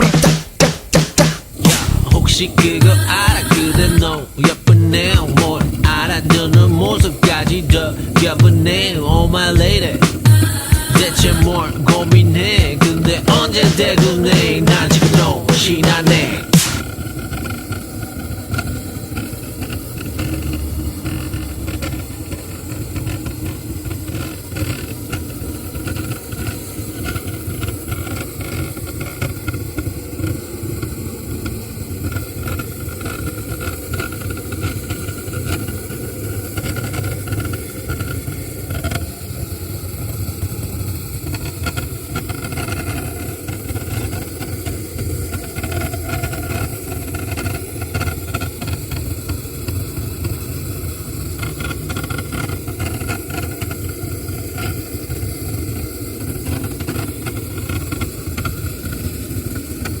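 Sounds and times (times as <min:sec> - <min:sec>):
engine running: 0:00.0 - 0:25.8.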